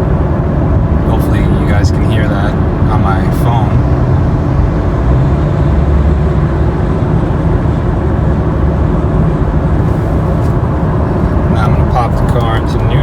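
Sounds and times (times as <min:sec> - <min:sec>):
car cabin road rumble: 0:00.0 - 0:13.0
grinding whirring growl: 0:00.7 - 0:13.0.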